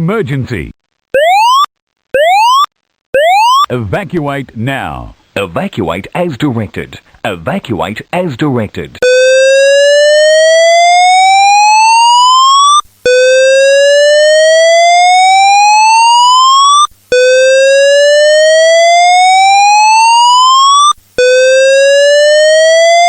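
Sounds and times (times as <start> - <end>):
fire alarm rising whoop: 1.2 - 3.7, 9.1 - 23.0.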